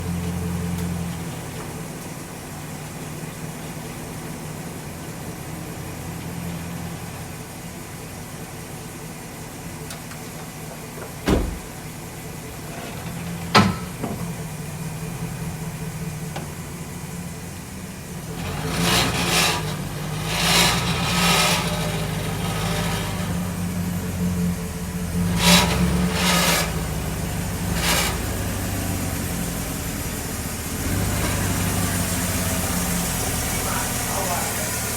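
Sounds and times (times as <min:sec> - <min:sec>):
truck engine running: 0:00.0 - 0:34.9
harsh grinding bursts: 0:16.2 - 0:29.9, 0:30.8 - 0:34.9.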